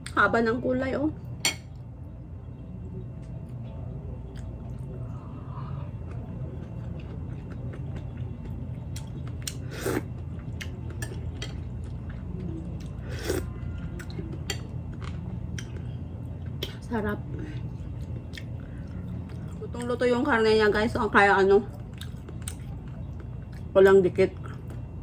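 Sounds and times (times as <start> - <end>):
person chewing: 5.9 - 16.8, 17.8 - 19.6, 21.9 - 23.7.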